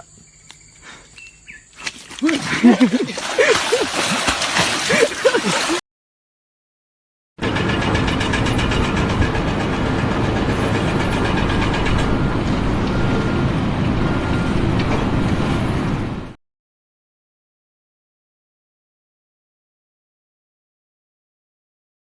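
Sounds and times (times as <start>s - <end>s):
heavy engine rumbling: 7.4s - 16.4s.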